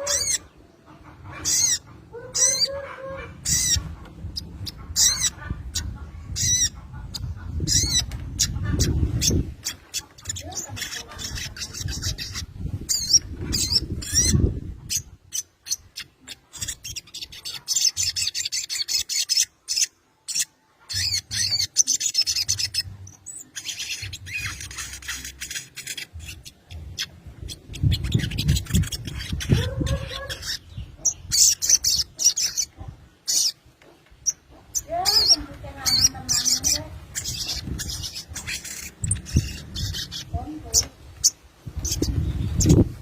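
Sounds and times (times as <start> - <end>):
sunbird high chirps: 0.0 - 0.6, 3.4 - 33.6, 34.2 - 43.0.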